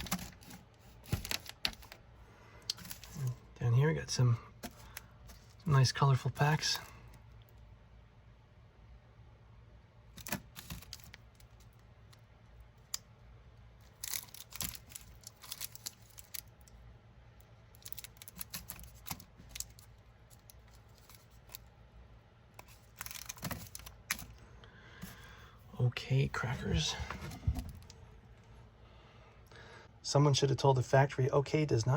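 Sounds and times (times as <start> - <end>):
paper wrappers rustling: 0.0 - 2.0, 2.7 - 3.3, 10.2 - 11.7, 13.9 - 16.6, 17.8 - 21.7, 22.6 - 24.4
faint low hum: 0.0 - 31.9.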